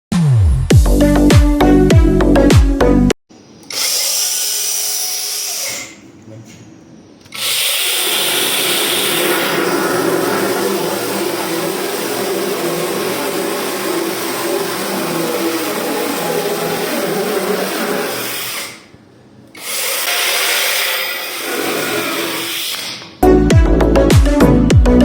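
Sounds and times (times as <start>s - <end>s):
chainsaw cutting wood: 7.3s - 18.9s, 19.6s - 23.2s.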